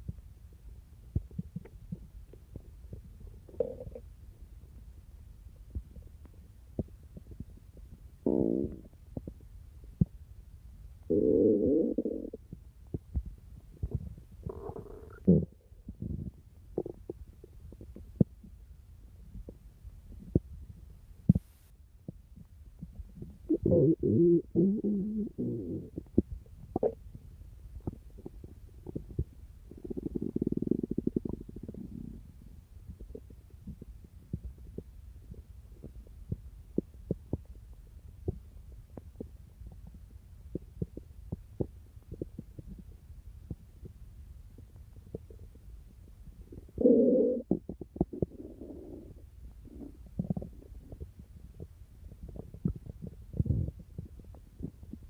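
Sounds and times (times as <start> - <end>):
faint low rumble: 0.0 - 55.0
stomach growling: 1.1 - 4.1, 5.7 - 10.2, 11.1 - 18.6, 22.1 - 27.2, 27.8 - 55.0.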